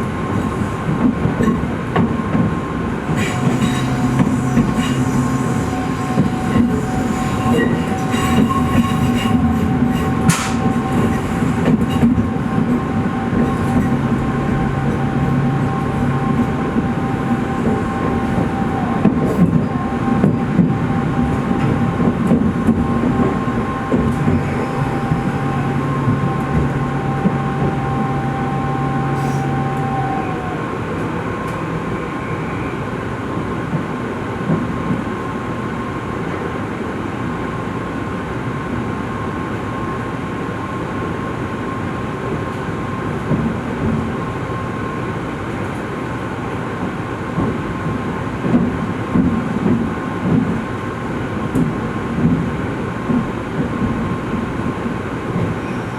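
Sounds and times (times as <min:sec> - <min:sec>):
train rumble: 0:00.0 - 0:55.9
lower hum: 0:03.0 - 0:33.2
second whine: 0:03.0 - 0:33.8
thin steady whine: 0:03.0 - 0:33.9.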